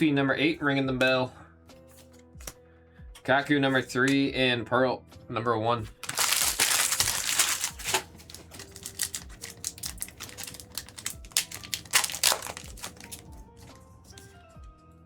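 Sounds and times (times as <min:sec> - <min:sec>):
foil wrapper crinkling and tearing: 0:06.0 - 0:13.4
cards clicking and rustling: 0:06.0 - 0:14.4.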